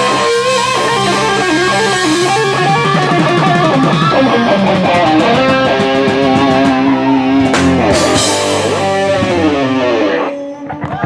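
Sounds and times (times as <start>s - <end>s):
cymbal crash: 0.0s - 3.9s, 7.5s - 10.2s
live rock band playing: 0.0s - 10.6s.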